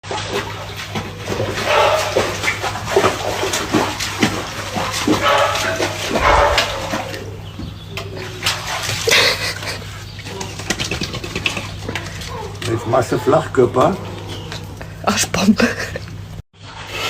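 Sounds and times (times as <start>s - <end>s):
dog barking: 1.6s - 3.4s, 4.8s - 7.4s
steady low hum: 4.6s - 8.5s.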